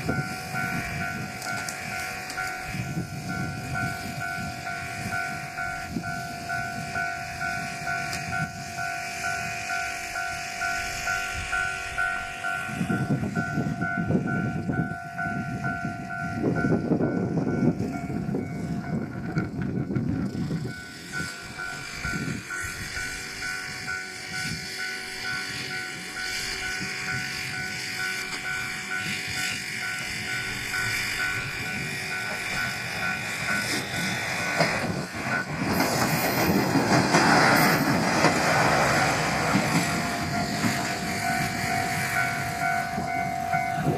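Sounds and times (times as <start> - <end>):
train wheels rumbling and clattering: 0.0 - 43.9
level crossing bell ringing: 39.0 - 43.9.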